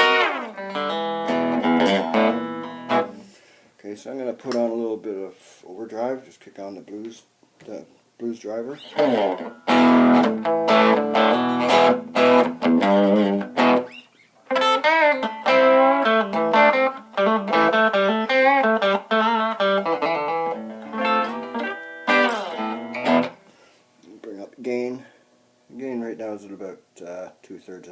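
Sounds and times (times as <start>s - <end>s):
overdriven electric guitar: 0.0s - 3.3s, 8.8s - 23.6s.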